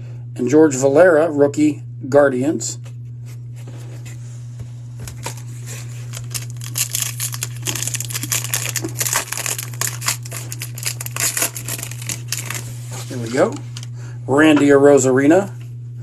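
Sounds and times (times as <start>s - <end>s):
plastic wrapper crinkling: 5.1s - 12.7s.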